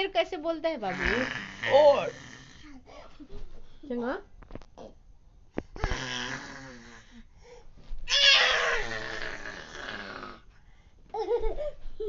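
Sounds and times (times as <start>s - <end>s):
child imitating a lion's roar: 1.0s - 2.6s, 5.8s - 7.2s, 8.1s - 10.4s.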